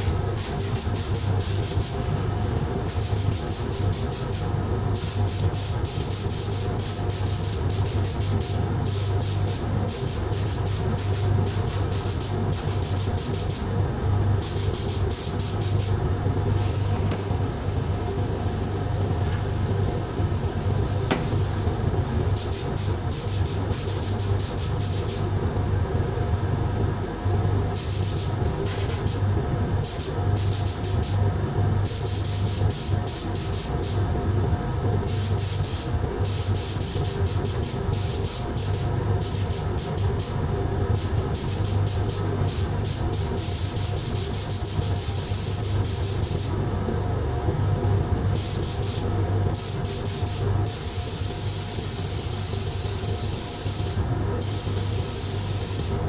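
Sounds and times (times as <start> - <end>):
low machine hum: 0.0 - 56.0
sandblaster hissing: 16.4 - 21.6, 49.6 - 56.0.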